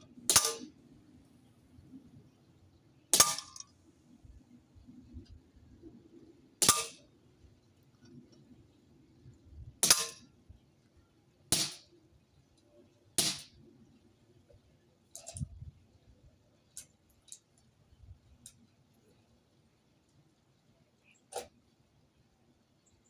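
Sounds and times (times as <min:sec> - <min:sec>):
airgun shots: 0:00.3 - 0:00.7, 0:03.1 - 0:03.6, 0:06.6 - 0:07.0, 0:09.8 - 0:10.2, 0:11.5 - 0:11.8, 0:13.2 - 0:13.5.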